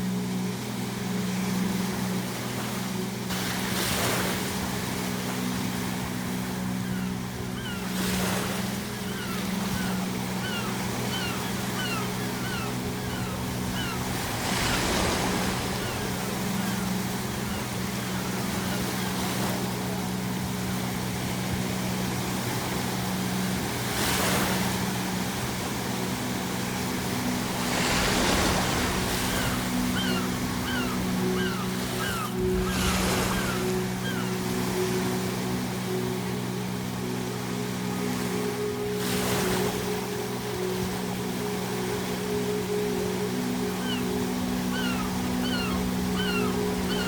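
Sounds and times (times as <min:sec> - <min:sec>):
ocean waves breaking: 0:00.0 - 0:47.0
gull calls: 0:06.6 - 0:19.5, 0:27.8 - 0:34.5, 0:43.5 - 0:47.0.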